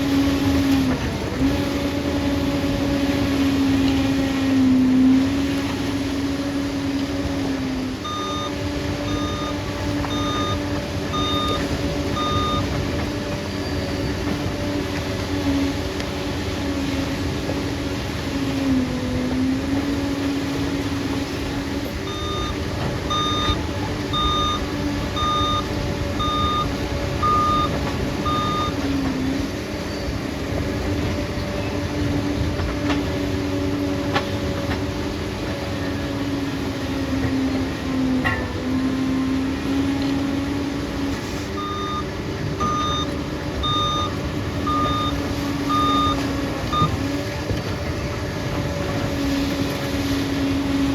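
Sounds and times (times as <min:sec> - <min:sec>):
diesel engine running: 0:00.0 - 0:50.9
reversing alarm beeping: 0:07.8 - 0:14.6, 0:22.0 - 0:30.4, 0:40.4 - 0:47.3.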